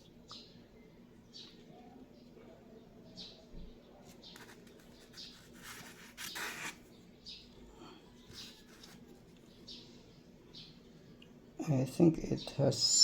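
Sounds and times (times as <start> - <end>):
bird chirping: 0.0 - 5.5, 6.2 - 7.6, 9.4 - 13.0.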